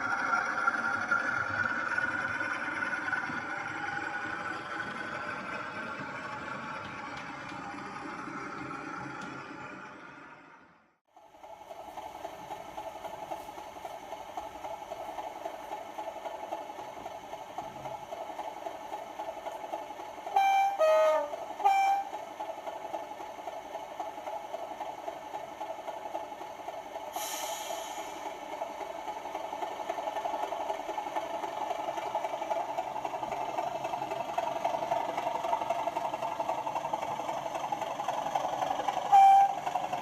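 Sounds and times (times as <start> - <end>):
two-tone horn: 20.4 - 22.1, 39.1 - 39.7
brief hiss: 27.2 - 28.2
diesel engine sound from small speaker: 32.0 - 40.0.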